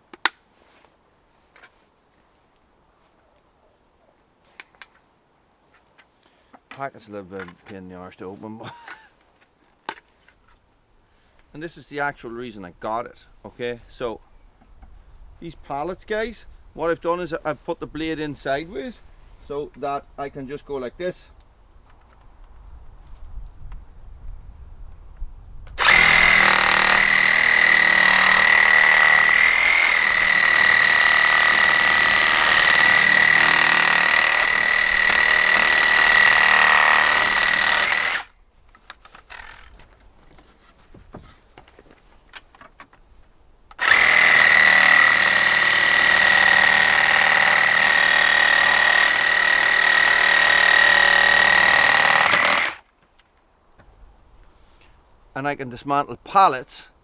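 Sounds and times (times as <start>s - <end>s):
reciprocating saw cutting wood: 25.8s - 38.3s, 39.3s - 39.7s, 43.8s - 52.8s.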